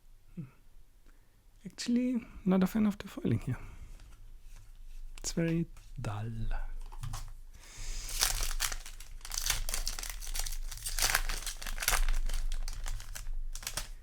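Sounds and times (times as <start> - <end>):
foil wrapper crinkling: 7.0 - 14.0.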